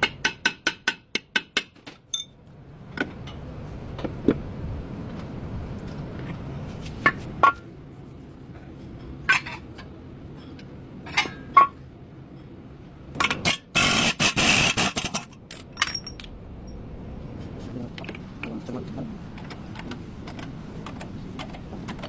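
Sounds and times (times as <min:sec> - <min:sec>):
metal tools clinking: 0:14.8 - 0:16.8.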